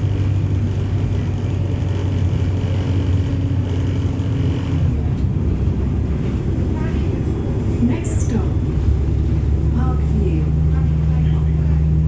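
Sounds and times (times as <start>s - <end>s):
bus diesel engine hum: 0.0s - 12.0s.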